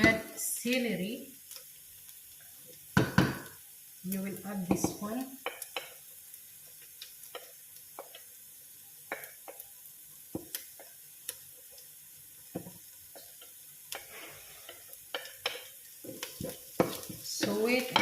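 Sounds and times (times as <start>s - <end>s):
vegetables sizzling in a pan: 0.0s - 18.0s
utensil tapping against pan: 4.7s - 6.0s, 9.1s - 9.6s, 14.7s - 18.0s.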